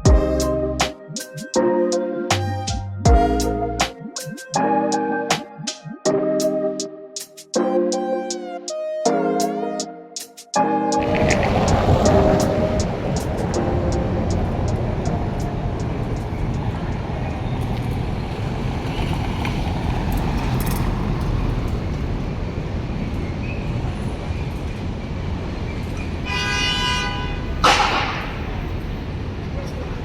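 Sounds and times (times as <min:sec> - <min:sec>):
street traffic rumble: 0:11.0 - 0:30.0
car horn toot: 0:26.3 - 0:27.5.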